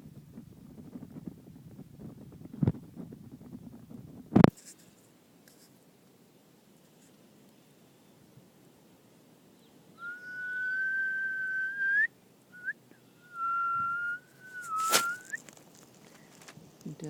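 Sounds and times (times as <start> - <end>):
person whistling: 10.0 - 15.4.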